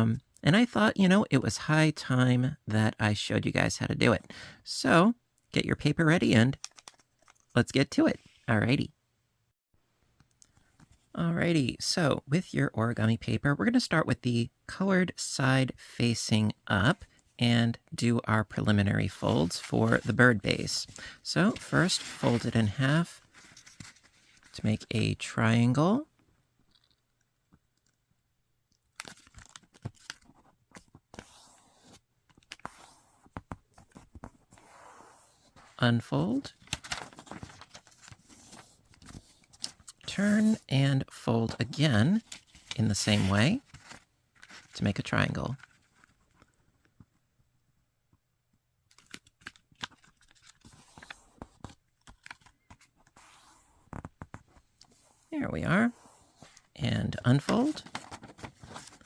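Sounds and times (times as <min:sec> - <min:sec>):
paper crinkling and crackling: 0:06.6 - 0:07.5, 0:19.2 - 0:24.8, 0:28.9 - 0:34.6, 0:36.5 - 0:40.6, 0:42.1 - 0:47.0, 0:48.9 - 0:55.2, 0:57.3 - 0:59.0
paper swishes: 0:20.8 - 0:24.6, 0:31.1 - 0:32.0, 0:32.6 - 0:35.8, 0:36.8 - 0:40.6, 0:42.2 - 0:44.8, 0:52.7 - 0:54.0, 0:55.9 - 0:56.7.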